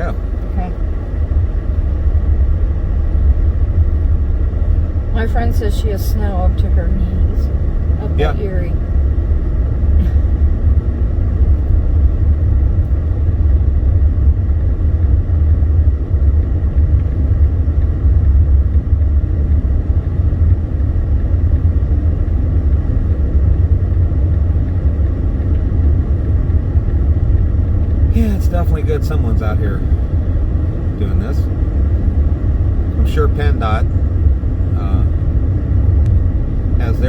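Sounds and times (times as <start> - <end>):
car driving on snowy road: 0.0 - 37.0.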